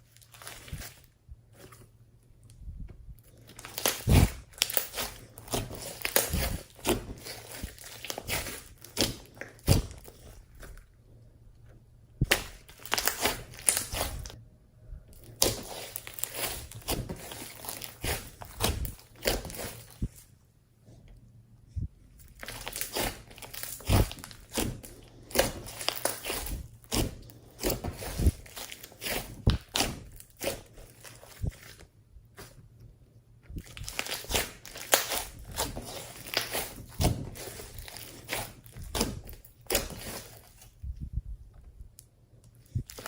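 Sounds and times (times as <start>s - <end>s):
slime squishing with sticky pops: 3.2s - 10.9s, 12.2s - 14.4s, 15.1s - 20.3s, 22.1s - 32.6s, 33.5s - 40.8s, 42.0s - 43.0s.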